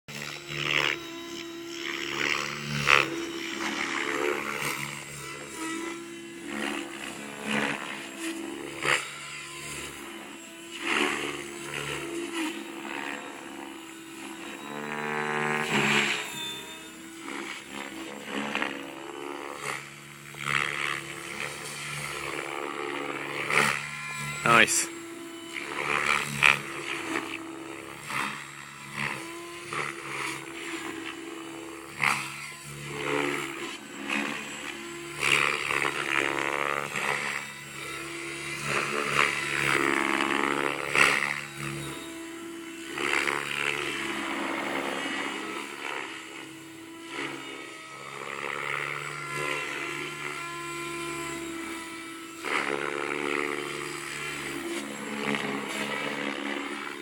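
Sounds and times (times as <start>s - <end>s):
helicopter motor and rotor whine: 0.1s - 57.0s
rushing rotor blade noise: 0.1s - 57.0s.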